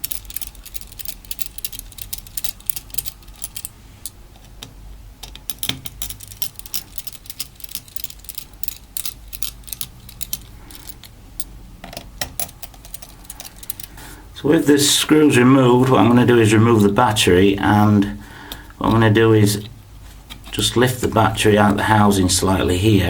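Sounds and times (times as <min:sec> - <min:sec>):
screwdriver clicking on screws: 0:00.0 - 0:11.1, 0:12.2 - 0:14.0.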